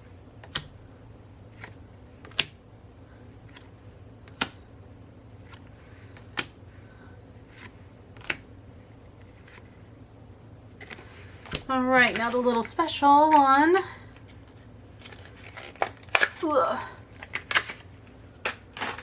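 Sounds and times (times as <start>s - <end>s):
soft card rustling: 5.3s - 10.0s, 10.7s - 19.0s.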